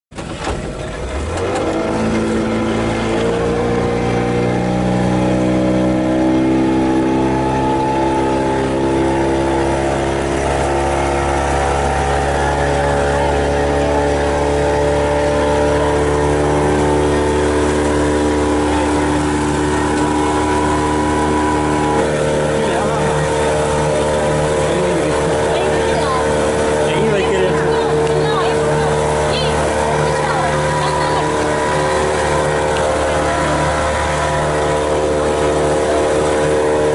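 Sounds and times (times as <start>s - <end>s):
motorboat engine droning: 0.1s - 36.9s.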